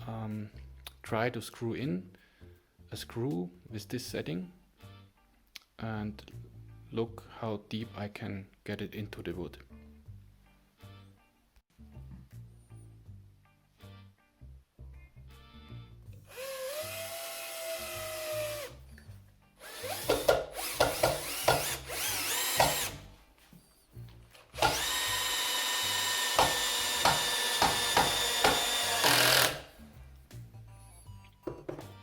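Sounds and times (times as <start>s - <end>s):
drill motor whining: 16.3s - 18.7s, 19.6s - 23.0s, 24.6s - 29.7s
drill clutch clicking: 19.6s - 23.0s, 24.6s - 29.7s.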